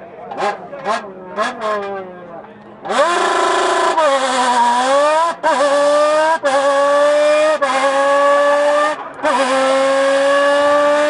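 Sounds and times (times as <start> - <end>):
imitation of car engine accelerating: 2.8 - 11.0.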